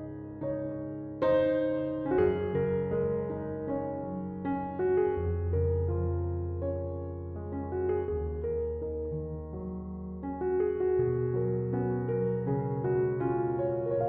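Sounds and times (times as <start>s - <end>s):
slow piano music: 0.0s - 14.0s.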